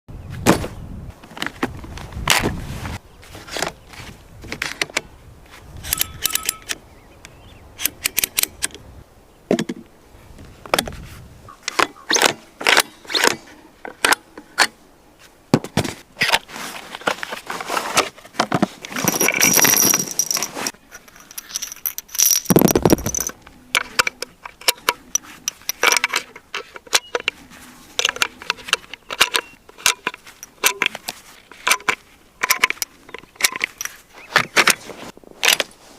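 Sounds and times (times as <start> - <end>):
metal parts clicking and clinking: 5.8 - 6.8, 18.9 - 27.4, 28.0 - 34.8
rattling scrape: 16.2 - 35.6.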